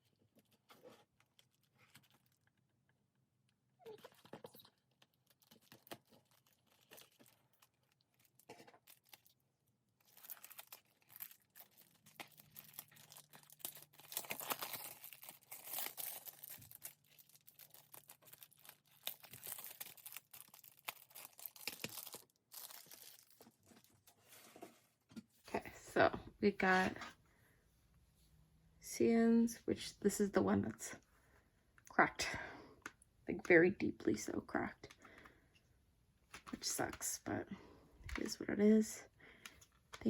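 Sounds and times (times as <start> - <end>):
plastic shrink-wrap crinkling: 3.9 - 24.1.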